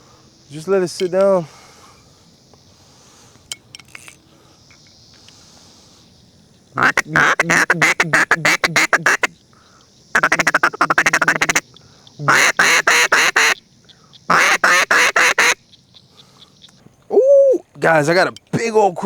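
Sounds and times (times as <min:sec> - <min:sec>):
duck quacking: 0:06.8 - 0:09.3, 0:10.1 - 0:11.6, 0:12.3 - 0:13.6, 0:14.3 - 0:15.6.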